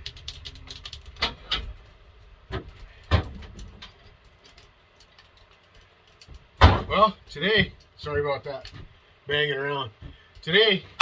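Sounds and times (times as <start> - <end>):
knocks and clunks: 2.5 - 4.0, 6.6 - 8.9.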